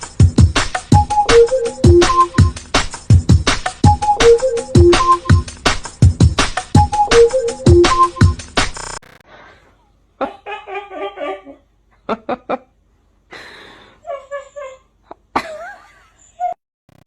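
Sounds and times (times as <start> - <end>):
sharp clicks: 8.6 - 9.2.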